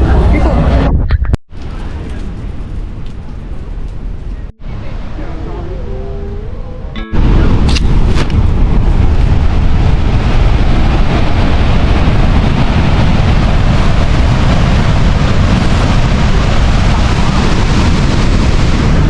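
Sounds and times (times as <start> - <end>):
wind buffeting microphone: 0.0 - 19.0
heavy rain rushing: 8.3 - 19.0.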